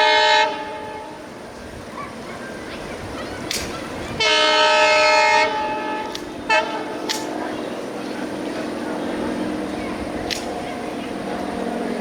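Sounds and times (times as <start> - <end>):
locomotive air horn blast: 0.0 - 1.4, 4.2 - 9.8
passing train rushing: 0.0 - 12.0.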